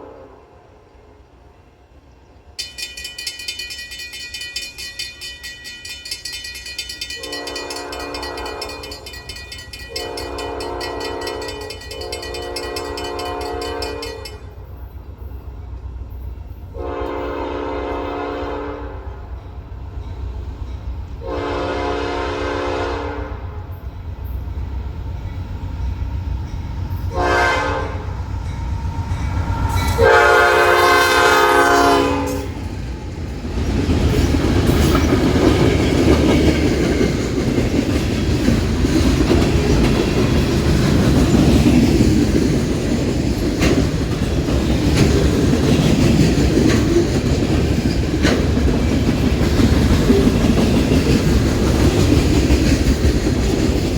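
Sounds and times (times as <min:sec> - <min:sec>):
locomotive air horn blasts: 0:00.0 - 0:00.6, 0:07.2 - 0:08.8, 0:09.9 - 0:14.3, 0:16.7 - 0:19.1, 0:21.2 - 0:23.5, 0:27.1 - 0:28.1, 0:30.0 - 0:32.5
train wheels rumbling: 0:01.6 - 0:53.9
wheels clacking over rail joints: 0:02.6 - 0:14.5, 0:32.3 - 0:53.9.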